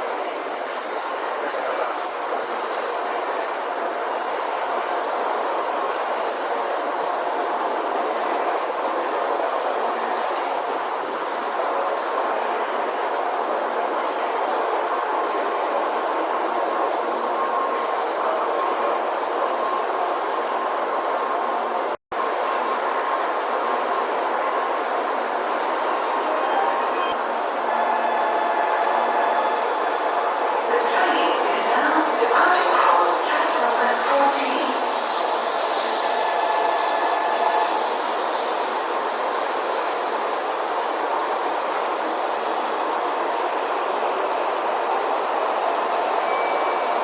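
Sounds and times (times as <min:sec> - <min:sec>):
train running with steady rumble: 0:00.0 - 0:47.0.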